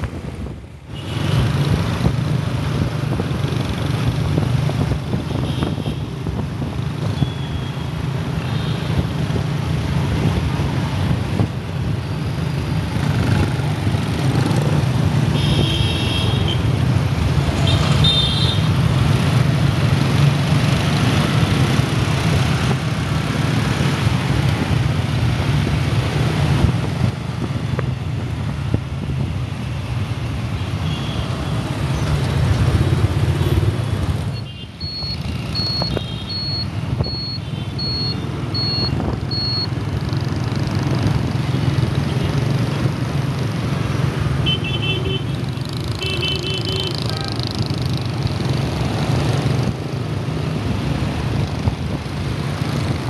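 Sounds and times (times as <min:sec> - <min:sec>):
road and wind noise: 0:00.0 - 0:53.0
short high beeps: 0:34.3 - 0:39.8.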